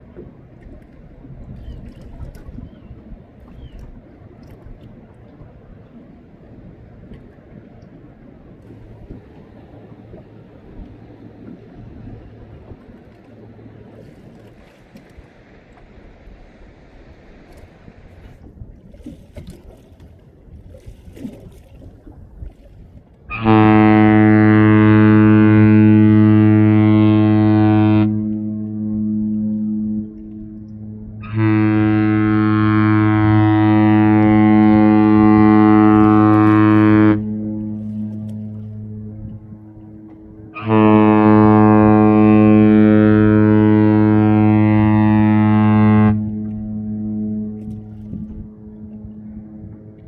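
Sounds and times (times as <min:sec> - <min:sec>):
water noise: 0:00.0 - 0:50.0
wind: 0:00.0 - 0:50.0
deep ship horn blast: 0:23.3 - 0:50.0.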